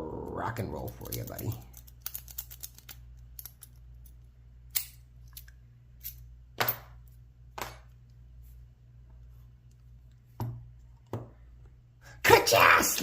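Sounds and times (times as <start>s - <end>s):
lock pick clicking on pins: 0.9s - 6.2s.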